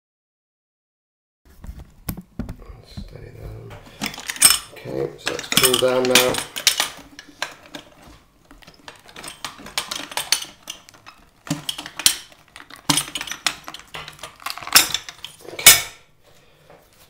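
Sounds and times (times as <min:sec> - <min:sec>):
plastic and metal parts clattering: 0:03.7 - 0:16.0.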